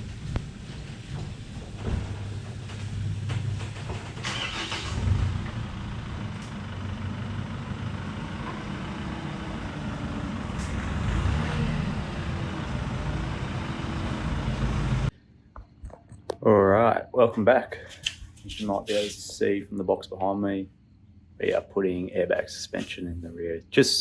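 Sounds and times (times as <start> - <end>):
road and wind noise: 0.0 - 15.1
vehicle engine hum: 0.0 - 16.3, 17.3 - 24.0.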